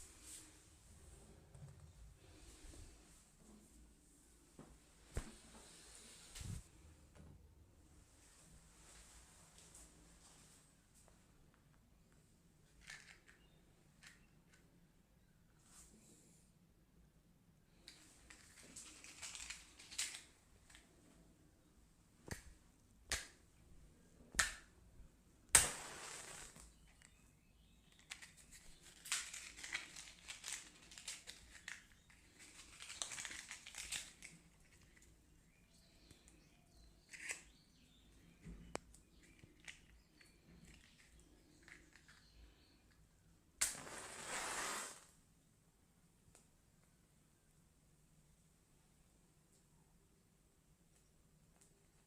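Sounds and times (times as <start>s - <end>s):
sharp snaps or slaps: 22.2s - 23.4s, 24.3s - 24.7s, 25.5s - 26.4s
brief hiss: 43.6s - 45.1s.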